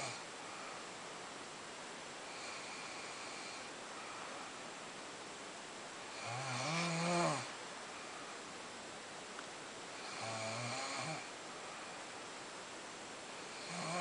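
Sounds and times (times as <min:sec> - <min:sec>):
woman snoring loudly: 0:06.1 - 0:07.5, 0:10.0 - 0:11.3, 0:13.5 - 0:14.0.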